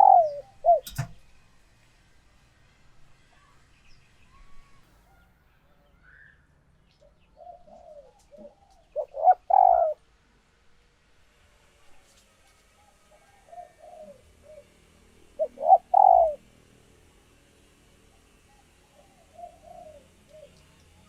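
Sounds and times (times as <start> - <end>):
dove cooing: 0.0 - 1.1, 7.4 - 10.0, 13.3 - 16.5, 18.9 - 20.6.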